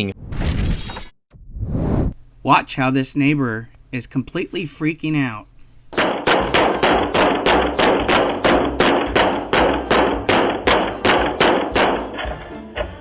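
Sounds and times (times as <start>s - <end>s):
banging on a door: 6.0s - 12.9s.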